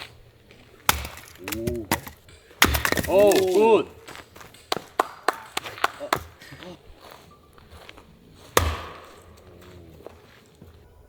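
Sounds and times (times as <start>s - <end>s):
axe chopping into log: 0.8s - 3.8s, 6.1s - 6.4s, 8.5s - 9.5s.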